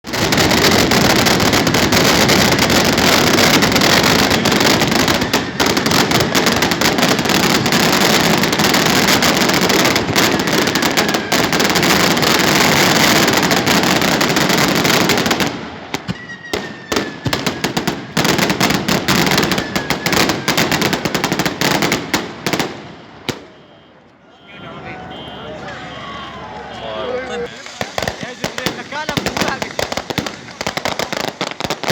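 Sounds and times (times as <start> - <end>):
firecracker bangs crackling: 0.0 - 23.6, 27.5 - 31.9
firework falling whistle: 15.9 - 18.4, 19.2 - 20.7.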